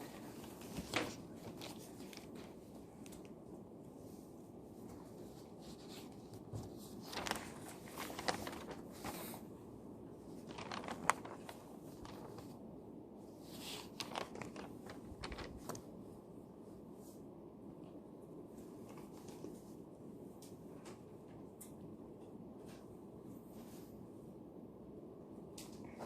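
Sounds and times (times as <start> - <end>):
paper rustling: 0.0 - 3.3, 4.8 - 9.5, 10.2 - 12.6, 13.4 - 16.0.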